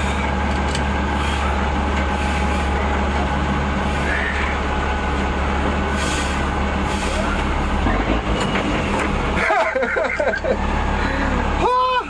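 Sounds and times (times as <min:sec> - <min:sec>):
truck engine droning: 0:00.0 - 0:12.0
short hissing puffs: 0:05.9 - 0:07.3.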